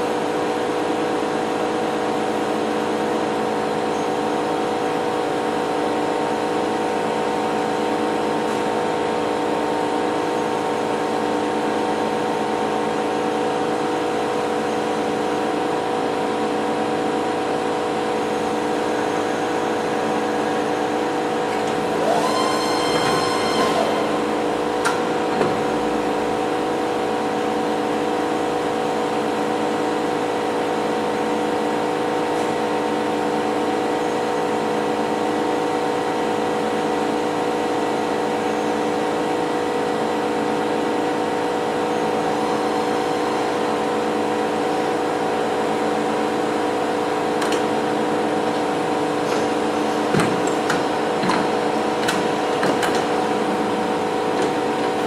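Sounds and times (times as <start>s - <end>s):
milling machine hum: 0.0s - 55.0s.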